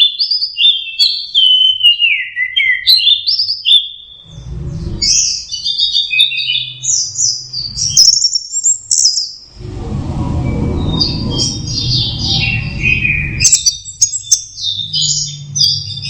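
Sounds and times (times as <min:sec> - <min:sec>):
thrush singing whistled notes: 0:00.0 - 0:16.0
low background rumble: 0:04.3 - 0:05.5, 0:09.4 - 0:16.0.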